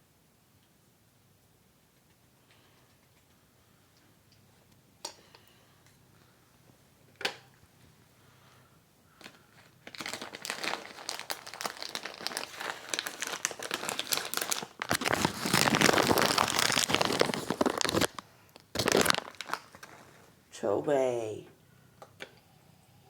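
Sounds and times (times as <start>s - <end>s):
plastic packet rustling: 9.1s - 20.4s.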